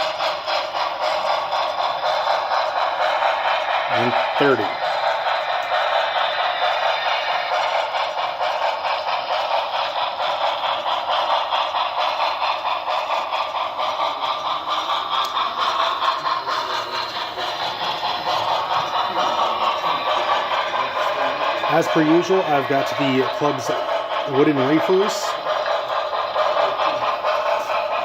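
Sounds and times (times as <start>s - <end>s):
model train steam chuff: 0.0s - 28.0s
wheels clattering on track: 0.0s - 28.0s.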